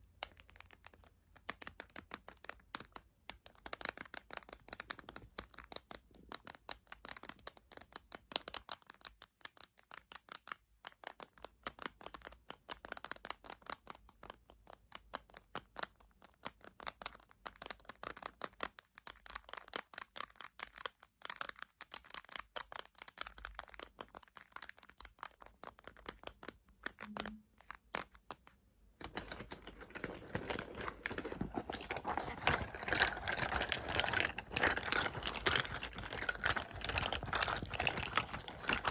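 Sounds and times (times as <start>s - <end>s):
crinkly scratching: 27.6s - 38.9s.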